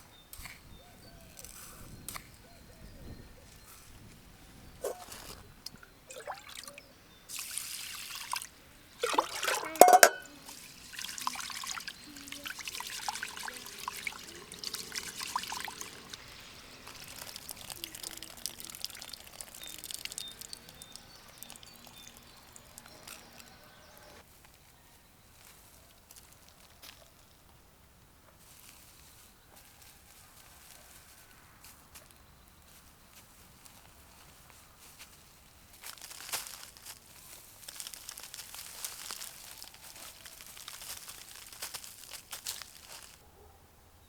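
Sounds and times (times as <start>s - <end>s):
liquid pouring and trickling: 4.9s - 24.2s
splash and clatter: 7.3s - 23.5s.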